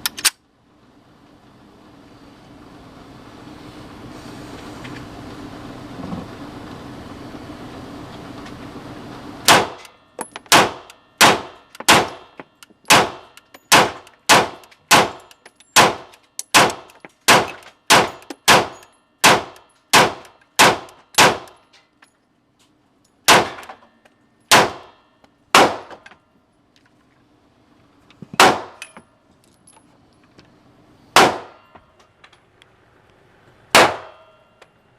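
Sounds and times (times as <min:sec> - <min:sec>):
pistol shots: 0:09.5 - 0:09.9, 0:10.5 - 0:21.6, 0:23.3 - 0:23.7, 0:24.5 - 0:26.0, 0:28.4 - 0:28.8, 0:31.2 - 0:31.6, 0:33.7 - 0:34.3.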